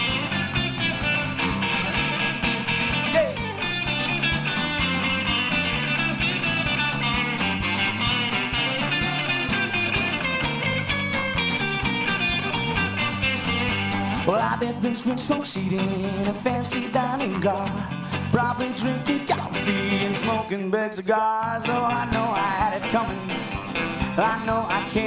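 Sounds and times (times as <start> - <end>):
electric guitar solo: 0.0 - 14.5
steady driving drum beat: 0.0 - 20.2, 22.1 - 25.0
strummed acoustic guitar: 0.0 - 20.6, 21.7 - 25.0
walking bass: 0.0 - 20.6, 21.4 - 25.0.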